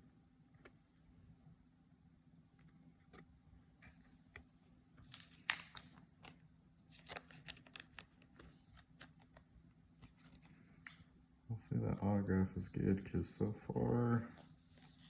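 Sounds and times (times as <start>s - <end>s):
trading cards and plastic rustling: 3.9s - 11.0s, 14.3s - 15.0s.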